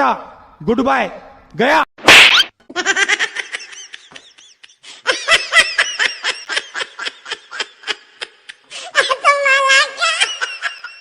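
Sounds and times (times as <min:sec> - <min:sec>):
person laughing in bursts: 0:02.7 - 0:09.2.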